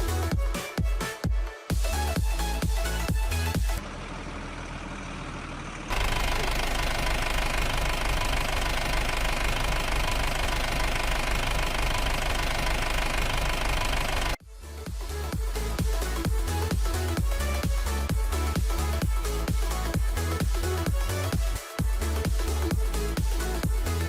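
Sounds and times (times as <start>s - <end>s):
electronic music: 0.0s - 3.8s, 14.1s - 24.0s
engine running with low knock: 0.0s - 24.0s.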